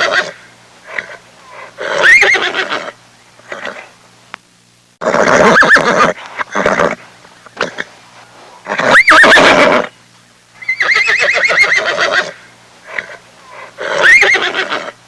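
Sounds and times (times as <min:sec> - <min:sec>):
horse neighing: 0:05.0 - 0:07.0, 0:08.7 - 0:09.9, 0:10.6 - 0:12.4, 0:13.8 - 0:15.0.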